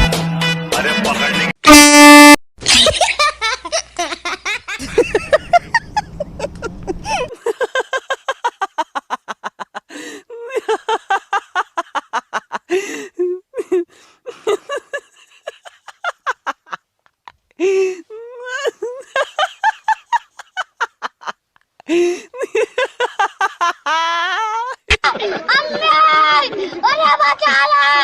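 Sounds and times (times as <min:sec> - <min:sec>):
person laughing hard: 0:02.6 - 0:16.8, 0:17.6 - 0:26.8
gasping breaths: 0:21.8 - 0:22.4.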